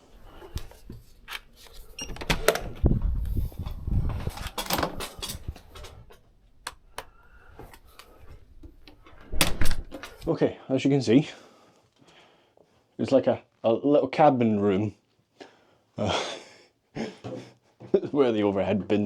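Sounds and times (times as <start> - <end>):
door lock clicks: 9.3 - 10.1.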